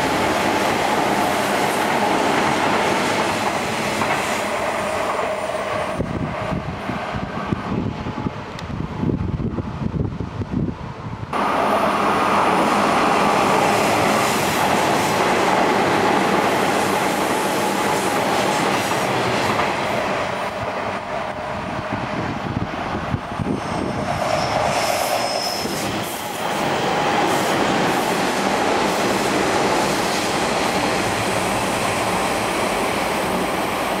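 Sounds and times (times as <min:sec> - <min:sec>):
train wheels rumbling on rail: 0:00.0 - 0:34.0
wheel squeal: 0:23.6 - 0:26.1.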